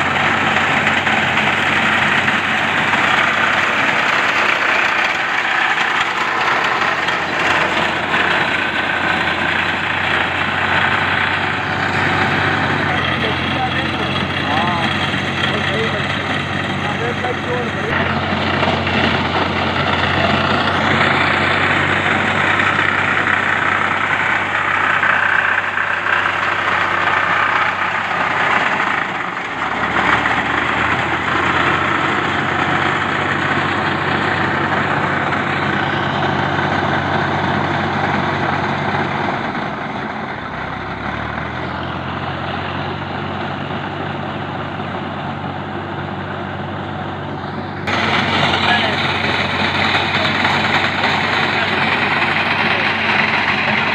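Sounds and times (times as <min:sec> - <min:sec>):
tractor diesel engine running: 0:00.0 - 0:53.9.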